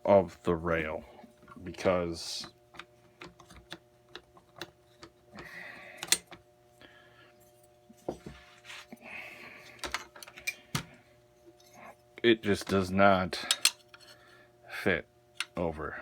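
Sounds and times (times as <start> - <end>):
metal cover clicking and scraping: 13.4 - 14.2.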